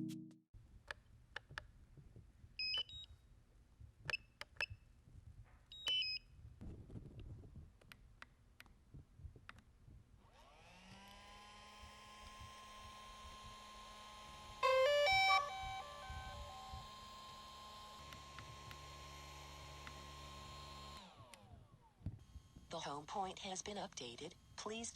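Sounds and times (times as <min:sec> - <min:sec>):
drone motors whining and humming: 0:10.4 - 0:21.6.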